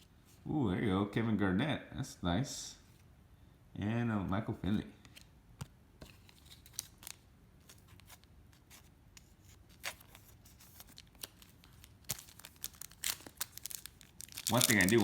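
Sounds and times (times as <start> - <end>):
cards being shuffled by hand: 6.0 - 15.0.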